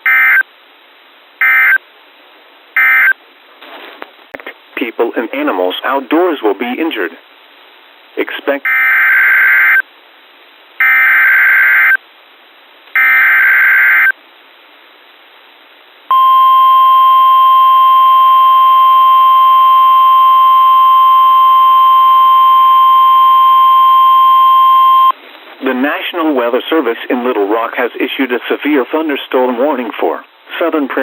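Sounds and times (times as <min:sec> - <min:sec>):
steady warning alarm tone: 0:16.1 - 0:25.2.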